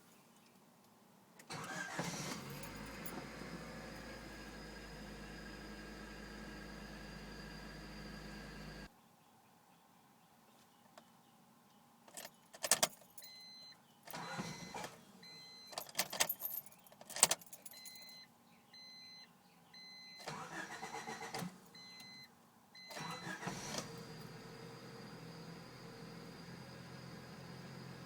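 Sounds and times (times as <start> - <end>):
sharp starter clicks: 1.4 - 3.3, 20.3 - 21.6, 22.9 - 24.3
car engine idling: 2.5 - 8.9
dashboard warning chime beeping: 13.2 - 15.8, 17.8 - 20.3, 20.9 - 23.5.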